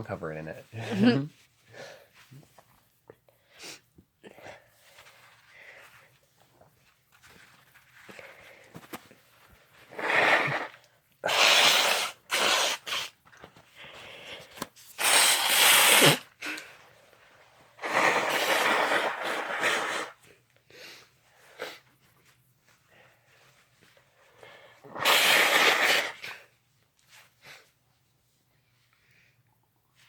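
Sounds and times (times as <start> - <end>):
person sneezing: 15.0 - 16.6, 24.9 - 26.4.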